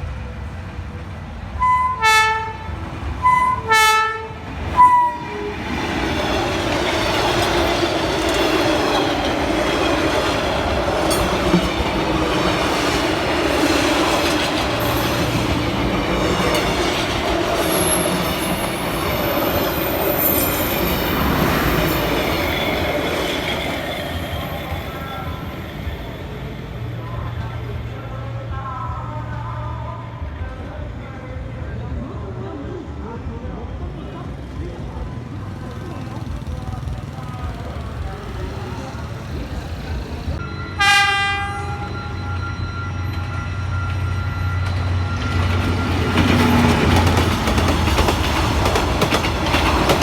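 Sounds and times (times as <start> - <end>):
train wheels rumbling on rail: 0.0 - 27.9, 33.2 - 50.0
locomotive horn blasts: 1.6 - 5.6, 40.4 - 44.9
high wheel squeal: 3.2 - 3.7, 4.7 - 7.2, 14.0 - 27.0, 38.6 - 47.2.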